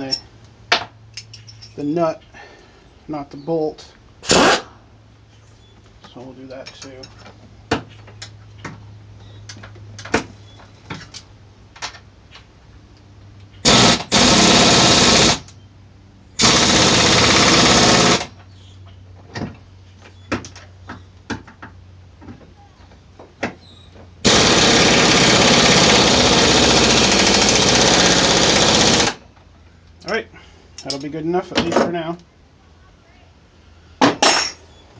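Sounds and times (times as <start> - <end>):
pneumatic impact wrench hammering: 4.2 - 4.7, 13.6 - 15.5, 16.4 - 18.3, 24.2 - 29.2.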